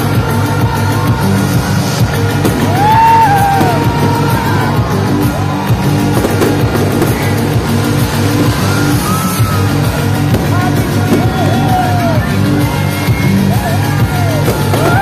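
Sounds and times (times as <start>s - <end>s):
heavy repeating bass line: 0.0s - 15.0s.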